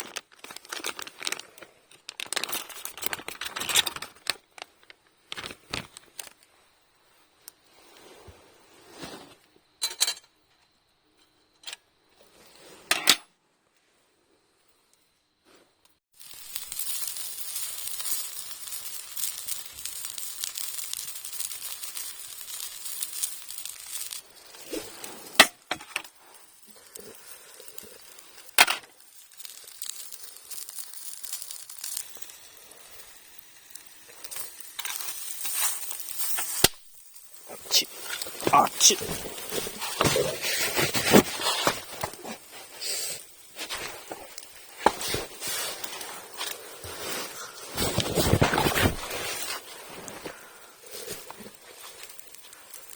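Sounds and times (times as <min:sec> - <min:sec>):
food sizzling in a pan: 0:16.2 - 0:52.9.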